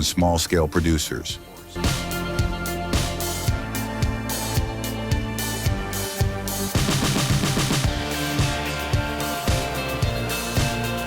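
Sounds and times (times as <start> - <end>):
background music with drum beat: 1.3 - 11.0
drum fill: 1.8 - 11.0.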